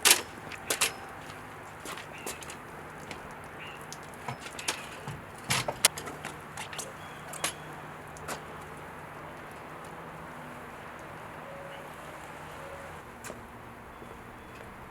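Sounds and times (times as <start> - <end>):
light clicks and clatter: 0.0 - 8.7.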